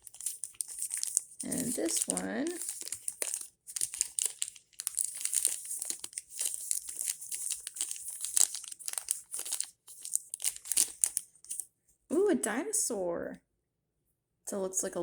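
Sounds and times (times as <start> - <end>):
plastic wrapper crinkling: 0.0 - 11.6.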